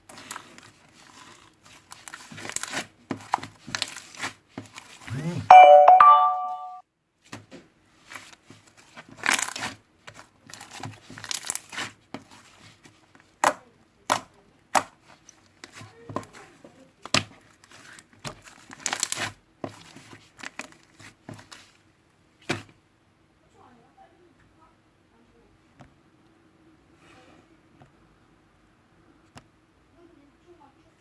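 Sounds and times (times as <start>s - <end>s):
slime crackling rustles: 0.0s - 5.1s, 7.9s - 13.4s, 15.0s - 21.9s.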